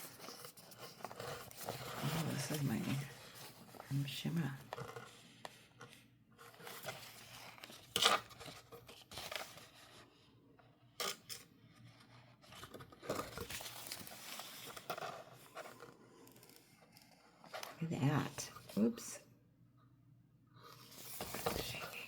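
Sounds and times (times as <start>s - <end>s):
packaging rustling and crinkling: 12.6s - 15.8s.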